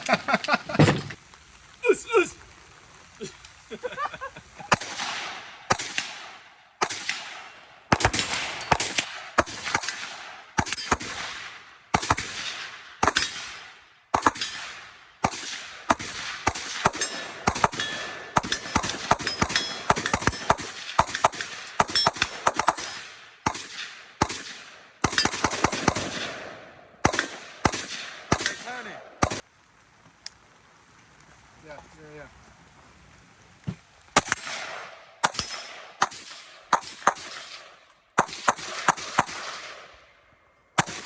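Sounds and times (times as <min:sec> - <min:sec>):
gunshots with echo: 0:06.8 - 0:11.4, 0:14.2 - 0:29.4, 0:34.2 - 0:39.9, 0:40.8 - 0:41.0.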